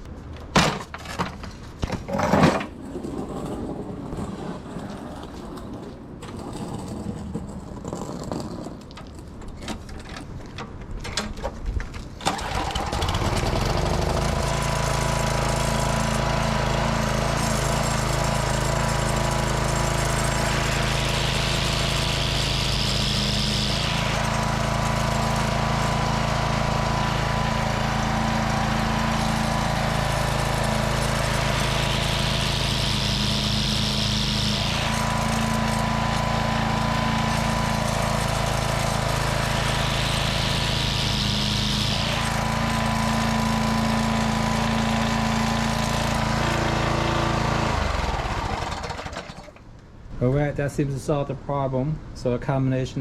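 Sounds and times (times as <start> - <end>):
pull start clicks and rattles: 8.8 - 14.4
small engine running: 12.2 - 49.6.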